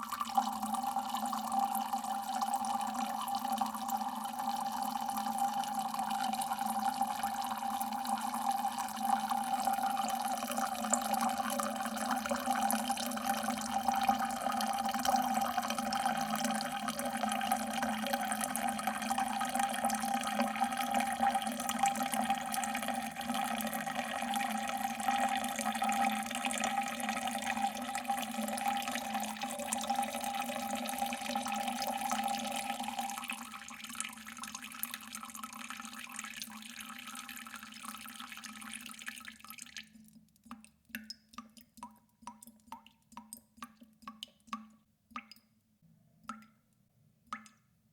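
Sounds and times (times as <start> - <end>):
water dripping: 0.0 - 45.6, 46.2 - 47.7.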